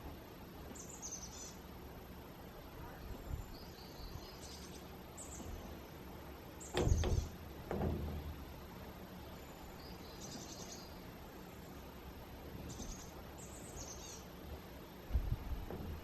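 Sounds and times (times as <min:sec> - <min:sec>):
low outdoor background: 0:00.0 - 0:16.0
small birds chirping: 0:00.7 - 0:01.7, 0:02.6 - 0:07.4, 0:09.0 - 0:15.3
loud low thump: 0:06.7 - 0:08.5, 0:15.1 - 0:16.0.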